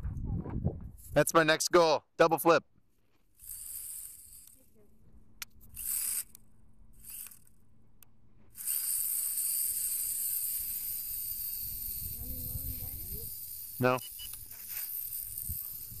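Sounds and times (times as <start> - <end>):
toy quadcopter motors whirring: 3.2 - 7.6, 8.5 - 16.0.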